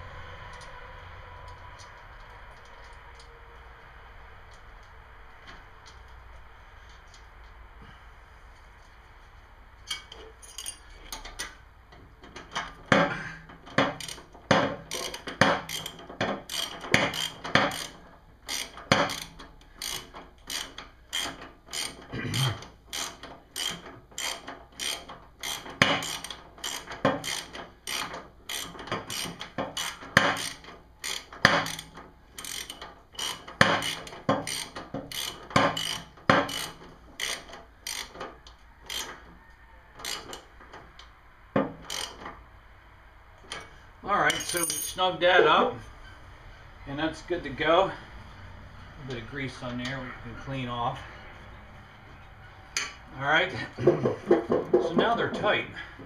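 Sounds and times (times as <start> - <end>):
socket ratchet clicking: 14.9 - 22.1, 22.9 - 38.2, 38.9 - 39.2, 41.8 - 42.2.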